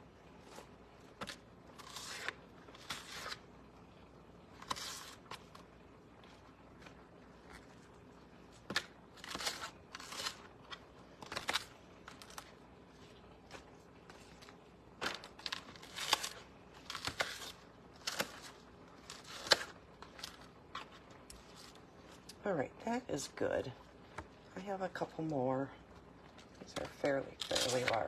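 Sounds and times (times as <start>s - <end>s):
cabbage leaves crinkling and tearing: 0.4s - 3.5s, 4.5s - 22.4s, 26.2s - 28.0s
cabbage leaves snapping: 15.0s - 20.4s.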